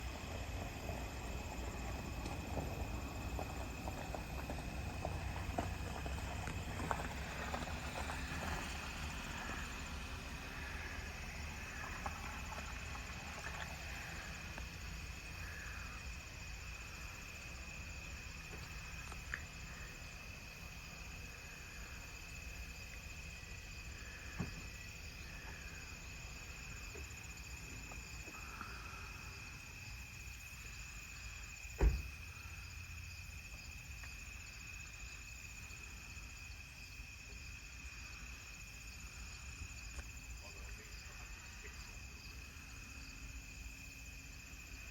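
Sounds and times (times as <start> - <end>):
low background rumble: 0.0 - 44.8
insects trilling: 0.0 - 44.9
knocks: 31.8 - 32.0.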